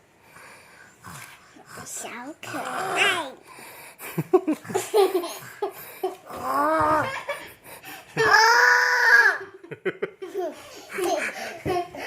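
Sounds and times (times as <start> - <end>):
child vocalizing: 1.8 - 3.4, 6.3 - 7.2
child babbling: 2.0 - 3.4.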